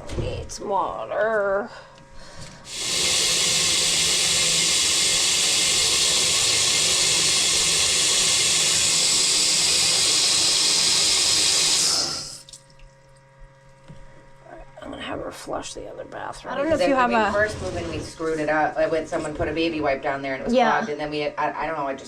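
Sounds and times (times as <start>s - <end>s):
water running into a drain: 2.7s - 13.8s.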